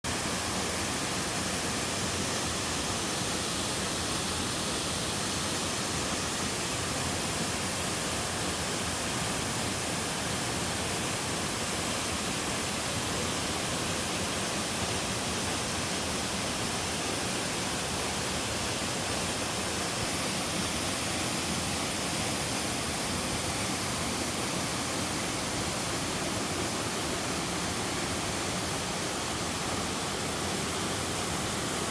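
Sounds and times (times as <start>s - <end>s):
waterfall pouring into pool: 0.1s - 31.9s.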